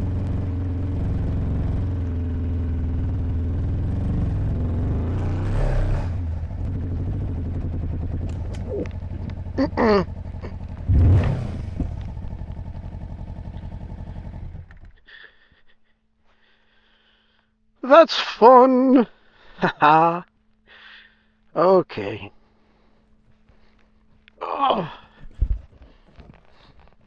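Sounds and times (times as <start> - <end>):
motorcycle engine under load: 0.0 - 15.1, 22.5 - 27.0.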